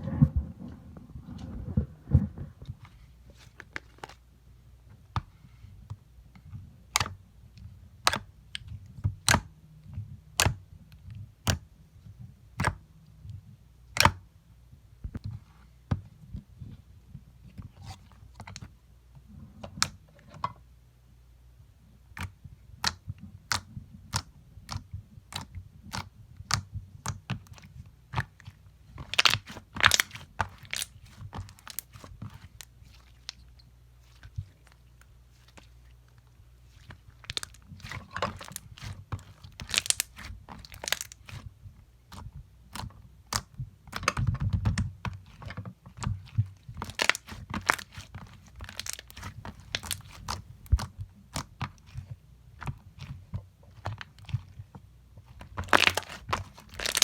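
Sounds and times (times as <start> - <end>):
sharp clicks of slime box: 9.2 - 9.5, 10.4 - 10.6, 22.2 - 27.2.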